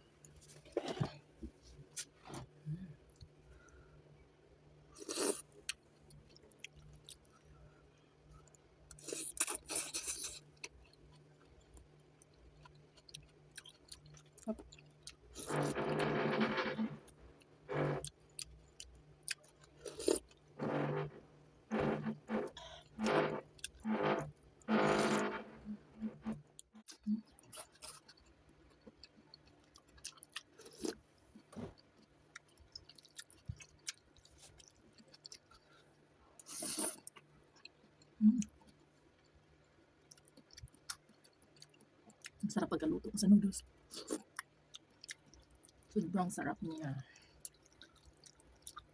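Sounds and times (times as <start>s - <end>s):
person chewing noodles: 5.0s - 7.5s, 8.4s - 16.7s, 17.7s - 21.1s, 26.2s - 35.8s, 43.9s - 45.9s, 47.4s - 48.9s
low steady hum: 14.4s - 27.2s.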